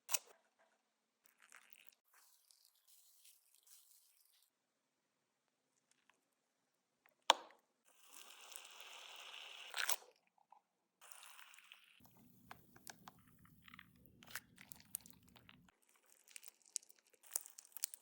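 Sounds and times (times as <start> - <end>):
slime crackling by hand: 12.5 - 18.0
slime popping: 12.5 - 18.0.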